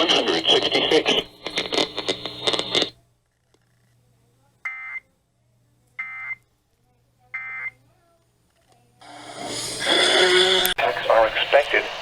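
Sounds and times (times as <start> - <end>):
buzzy digital data bursts: 0.0 - 2.9.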